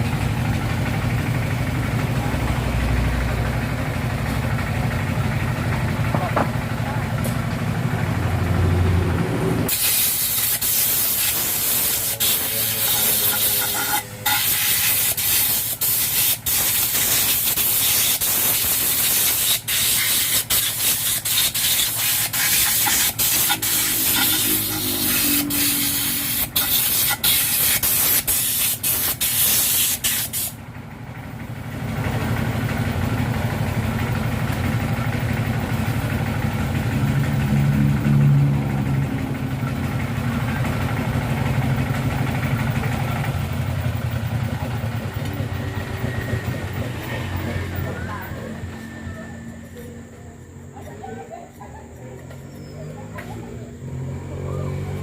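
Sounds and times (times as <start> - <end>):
engine idling: 0.0 - 55.0
pressurised jet hissing: 9.7 - 30.6.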